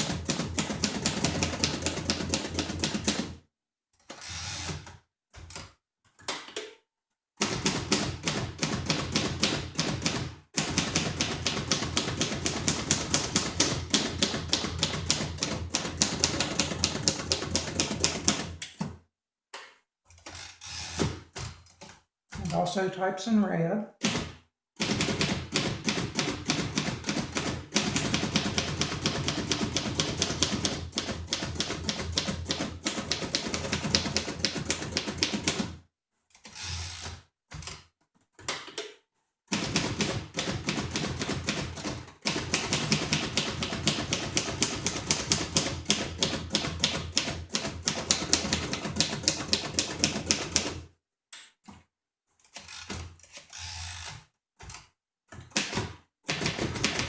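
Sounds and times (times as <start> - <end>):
manual typewriter typing: 0.0 - 3.3, 7.4 - 18.6, 24.0 - 35.7, 39.5 - 50.8, 55.4 - 57.0.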